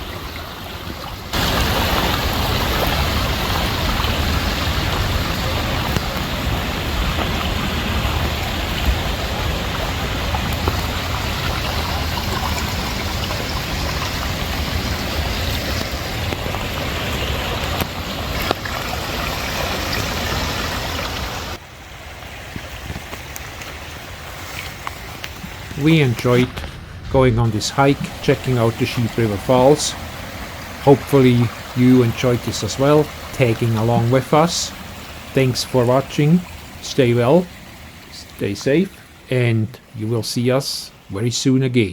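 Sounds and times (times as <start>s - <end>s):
river water rushing: 0.0s - 41.0s.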